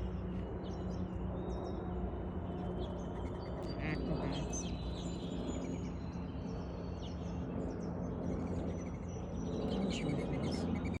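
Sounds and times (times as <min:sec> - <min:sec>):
small birds chirping: 0:02.5 - 0:11.0.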